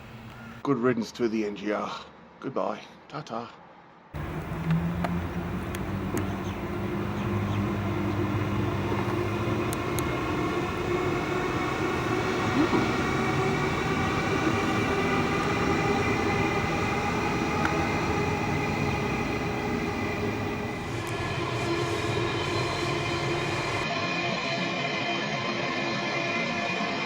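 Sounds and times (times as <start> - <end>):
low hum: 4.2 - 23.9
train wheels rumbling: 4.2 - 23.9
electric train whine: 4.2 - 27.0.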